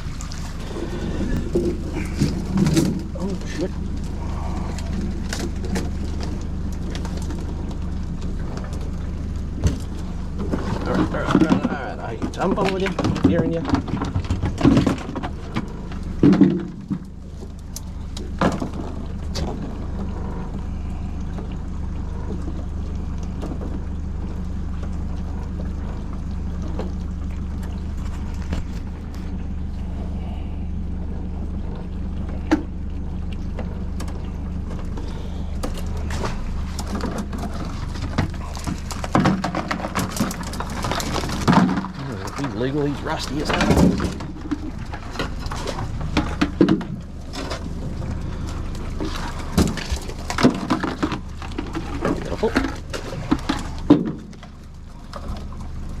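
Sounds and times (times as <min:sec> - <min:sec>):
small boat motor running: 0:00.0 - 0:56.0
water splashes: 0:00.0 - 0:56.0.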